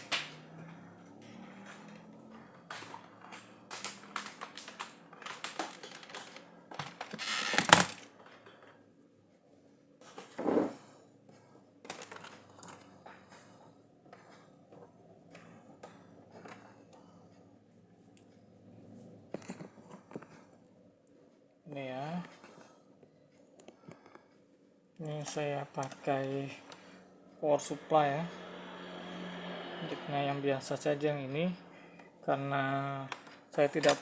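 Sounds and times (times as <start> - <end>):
objects clicking and knocking: 1.2 - 8.1.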